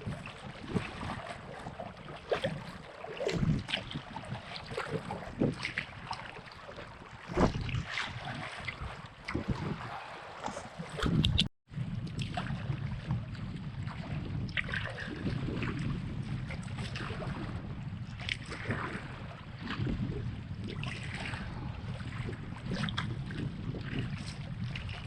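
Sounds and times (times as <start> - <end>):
paddle strokes splashing: 0.0 - 11.5, 12.1 - 25.0
waves splashing: 0.0 - 11.5
wind buffeting microphone: 0.0 - 25.0.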